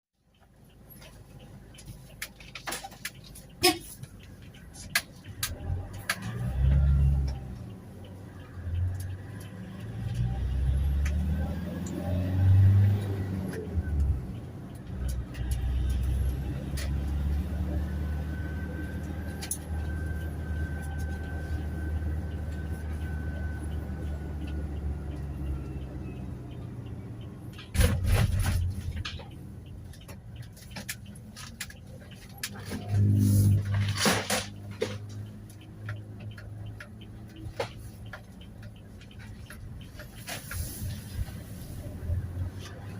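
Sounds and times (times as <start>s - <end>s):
van engine rumble: 0.2s - 42.9s
sharp clicks and knocks: 26.5s - 40.6s.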